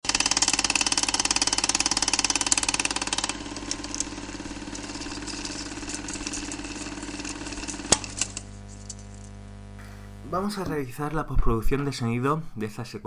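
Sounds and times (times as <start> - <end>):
engine idling: 0.1 - 8.8.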